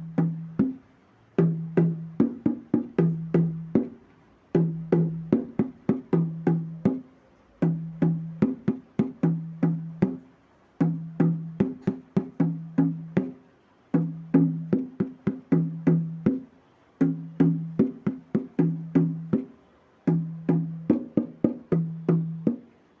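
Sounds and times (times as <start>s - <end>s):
hand drum playing: 1.4s - 4.0s, 4.6s - 10.2s, 10.8s - 13.4s, 14.0s - 19.5s, 20.1s - 22.7s.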